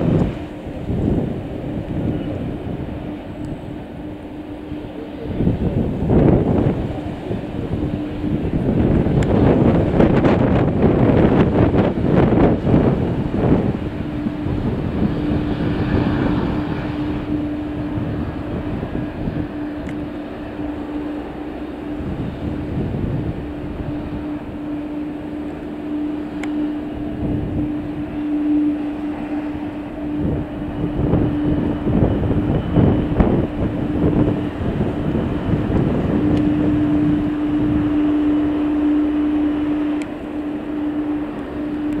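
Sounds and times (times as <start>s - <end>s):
airliner engine rushing: 0.0s - 42.0s
wind buffeting microphone: 0.0s - 42.0s.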